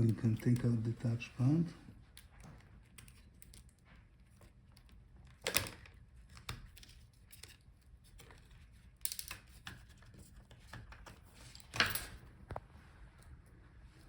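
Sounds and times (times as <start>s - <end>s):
rustling scrapes of laptop parts: 6.8s - 14.0s.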